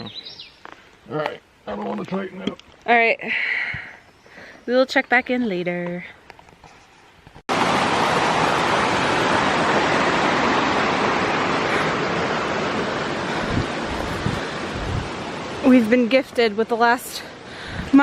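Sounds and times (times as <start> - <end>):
loud rushing noise: 13.2 - 15.6
low bumps: 13.3 - 15.8, 17.6 - 18.0.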